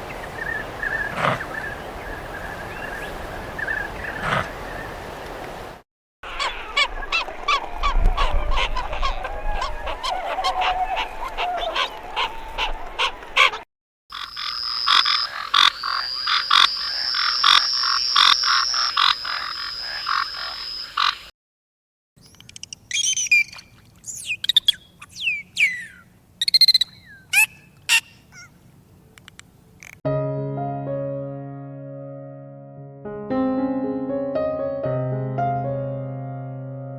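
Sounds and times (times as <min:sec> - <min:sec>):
high trill over pulsing calls: 0:14.1 - 0:21.3
repeated croaking pulses: 0:14.1 - 0:21.3
short falling whistled calls: 0:22.2 - 0:28.5.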